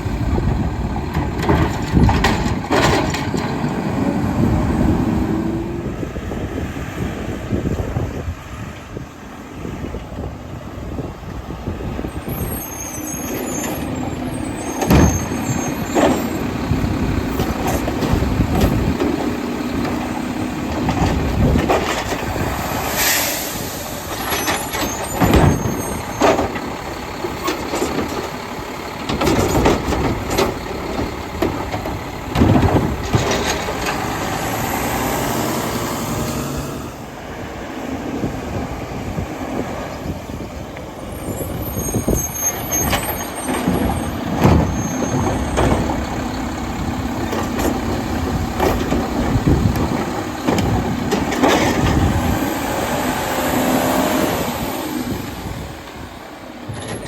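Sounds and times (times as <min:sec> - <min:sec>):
garbage truck engine whine: 0:00.0 - 0:57.0
loud bangs and clunks: 0:00.3 - 0:05.6, 0:13.2 - 0:22.7, 0:24.0 - 0:36.3, 0:41.8 - 0:56.0.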